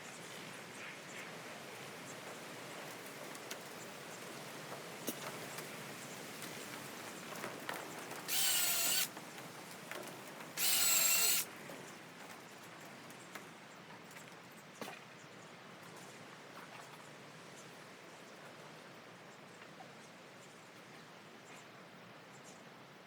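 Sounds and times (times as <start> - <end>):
power drill whining: 8.3 - 9.1, 10.6 - 11.5.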